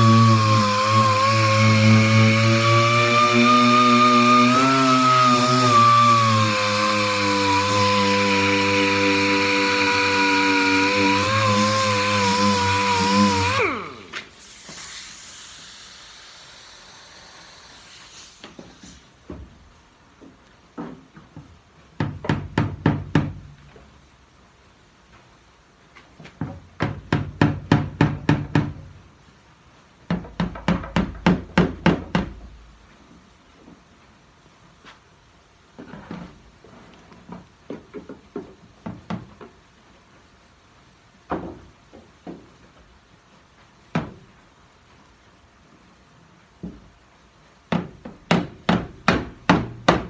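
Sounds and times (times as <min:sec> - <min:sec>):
power tool spinning: 0:00.0 - 0:14.4.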